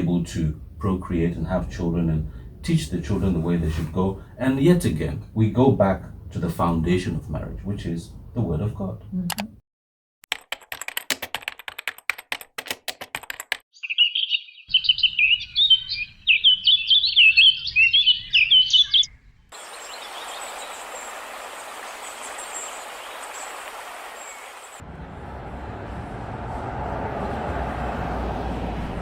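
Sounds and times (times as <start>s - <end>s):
rapid clicking: 10.3s - 13.6s
songbird twittering: 13.7s - 24.8s
outdoor background hiss: 19.1s - 25.1s.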